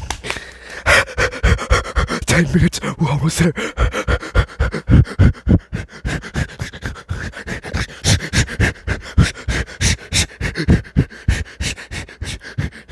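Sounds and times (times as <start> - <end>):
breathing into microphone: 0.3 - 12.9.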